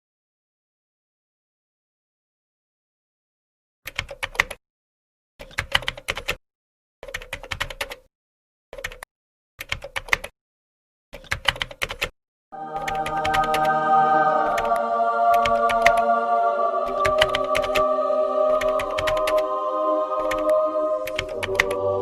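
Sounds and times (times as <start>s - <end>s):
rapid typing clicks: 3.9s - 4.6s, 5.4s - 6.4s, 7.0s - 8.1s, 8.8s - 9.0s, 9.6s - 10.3s, 11.2s - 12.1s, 18.6s - 19.4s.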